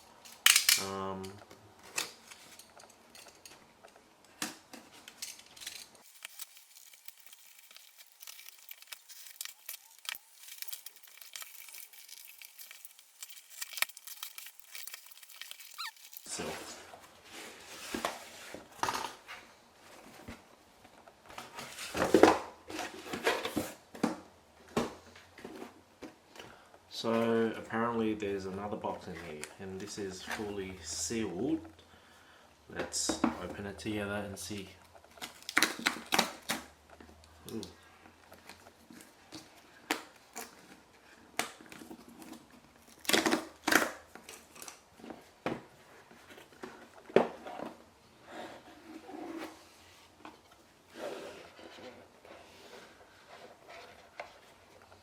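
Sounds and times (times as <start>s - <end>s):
packaging crackling tears: 6.0s - 16.3s.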